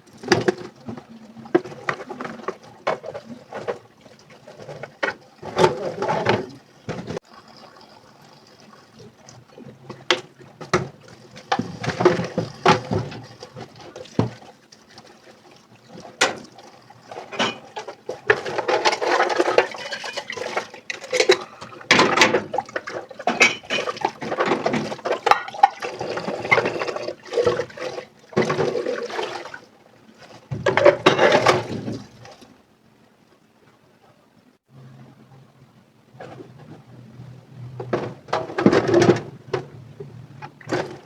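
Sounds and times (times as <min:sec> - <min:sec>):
water running over dishes: 0:00.0 - 0:32.5.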